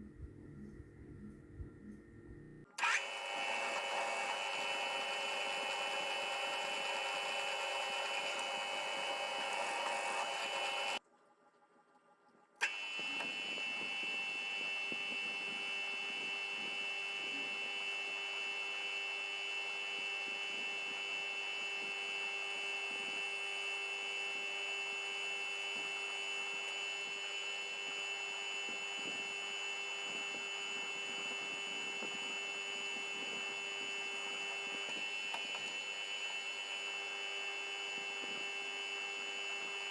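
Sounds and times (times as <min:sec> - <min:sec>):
machine tool motor whining: 0:02.8 - 0:11.0, 0:12.6 - 0:39.9.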